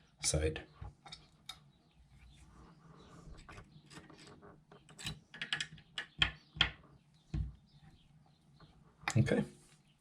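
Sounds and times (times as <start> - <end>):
small clicks and taps: 3.4 - 7.6.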